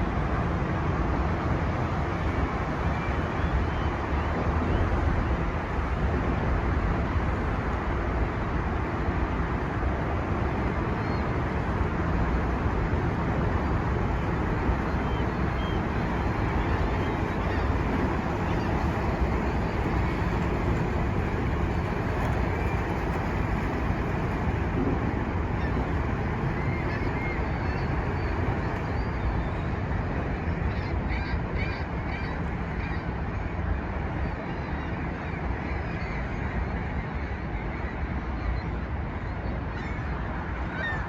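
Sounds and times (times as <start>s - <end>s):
rumbling outdoor background noise: 0.0s - 41.0s.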